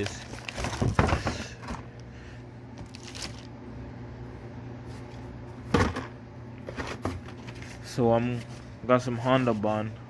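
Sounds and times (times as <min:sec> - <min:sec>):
objects rustling and knocking: 0:00.0 - 0:01.9, 0:04.9 - 0:08.8.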